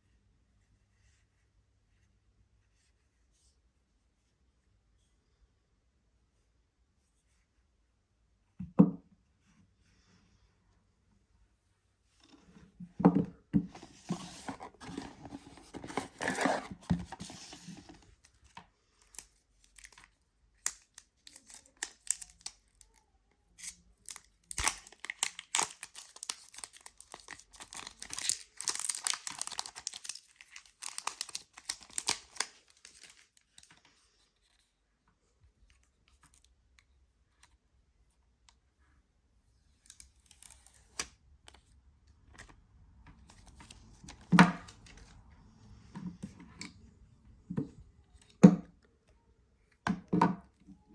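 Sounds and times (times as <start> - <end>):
handling clicks and rustles: 13.6 - 18.6
packaging torn and crinkled: 19.1 - 23.0, 23.6 - 33.7.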